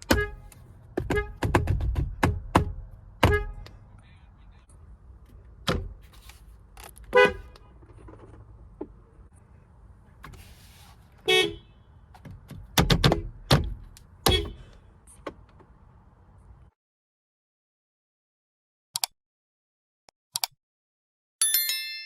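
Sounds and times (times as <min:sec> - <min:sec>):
car horn toots: 0:00.0 - 0:01.6, 0:03.2 - 0:03.7, 0:07.1 - 0:07.7, 0:11.2 - 0:11.9, 0:14.2 - 0:14.7.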